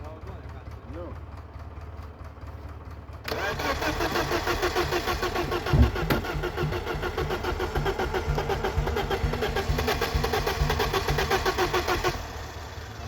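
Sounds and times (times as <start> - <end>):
starter motor cranking engine: 3.1 - 13.0
loud thump: 5.4 - 10.3.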